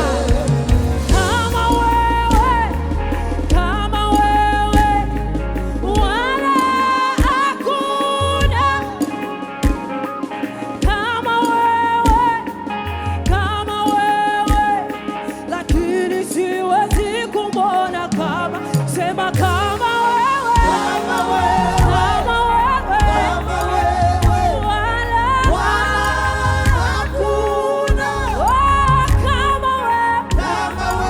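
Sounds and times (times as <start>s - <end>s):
drum hits: 0.0s - 2.6s
bass: 0.0s - 6.6s, 8.2s - 8.9s, 12.9s - 13.8s, 20.6s - 31.0s
singers with vibrato: 0.0s - 31.0s.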